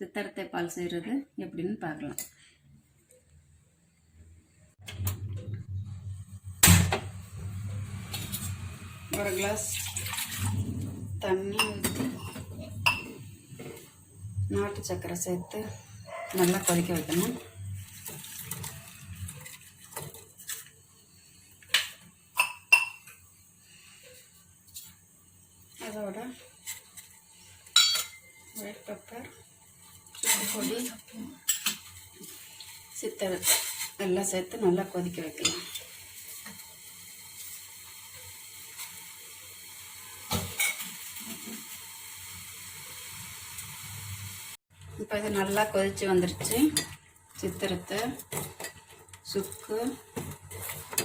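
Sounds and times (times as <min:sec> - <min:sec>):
water boiling in a pan: 0:06.6 - 0:11.5, 0:15.9 - 0:51.0
spoon clinking on metal pot: 0:27.8 - 0:28.3.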